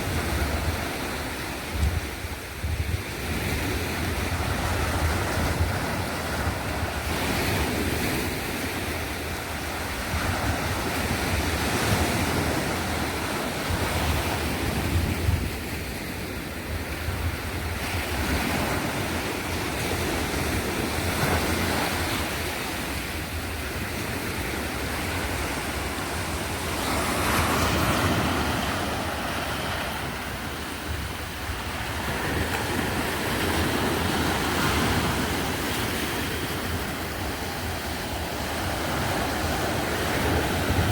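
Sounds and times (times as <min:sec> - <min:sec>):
sea waves washing onto shore: 0:00.0 - 0:40.9
wind rumbling on microphone: 0:00.0 - 0:40.9.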